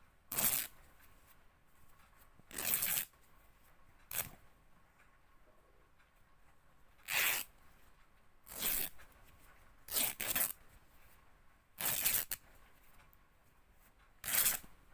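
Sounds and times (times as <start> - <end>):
fabric ripping: 7.1 - 7.4, 14.2 - 14.6.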